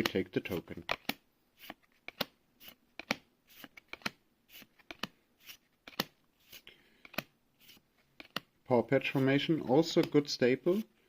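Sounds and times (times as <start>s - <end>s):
cards snapping and swishing: 0.8s - 8.5s.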